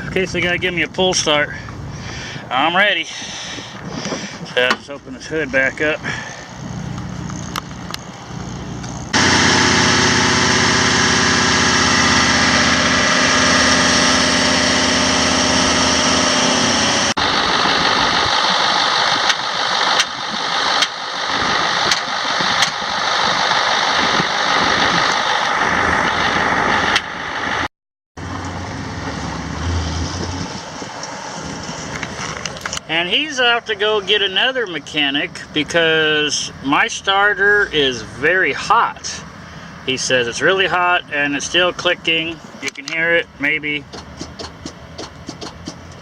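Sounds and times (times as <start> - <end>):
diesel truck engine running: 0.0 - 46.0
sharp clicks and knocks: 21.9 - 22.8, 43.8 - 46.0.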